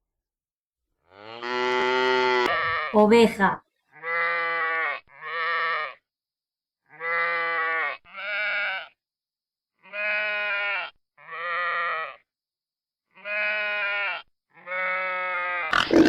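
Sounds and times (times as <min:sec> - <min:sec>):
sheep bleating: 0:01.1 - 0:03.2, 0:03.9 - 0:06.1, 0:06.8 - 0:09.0, 0:09.8 - 0:12.3, 0:13.1 - 0:16.0.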